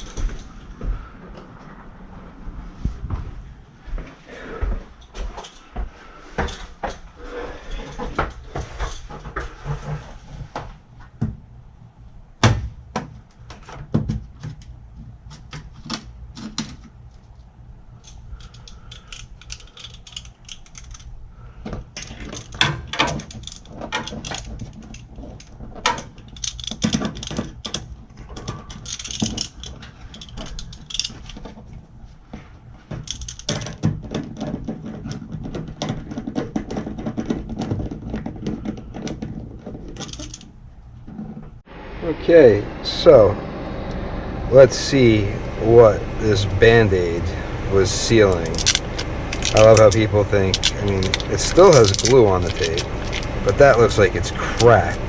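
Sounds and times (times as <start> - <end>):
steady low hum: 0.0 - 36.1, 38.2 - 55.0
tools clicking and rattling: 18.0 - 21.2, 22.0 - 31.7, 32.9 - 40.5, 48.1 - 54.9.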